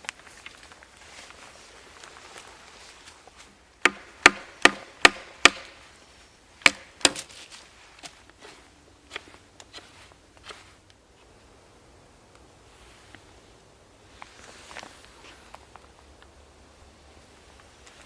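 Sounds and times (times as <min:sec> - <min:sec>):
chopping blows into wood: 0:03.8 - 0:05.8, 0:06.6 - 0:07.3.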